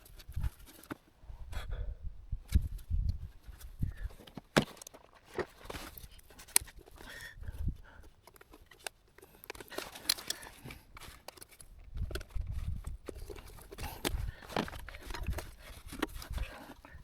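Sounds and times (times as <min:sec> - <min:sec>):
handling clicks and knocks: 0:04.0 - 0:07.1, 0:08.1 - 0:17.0.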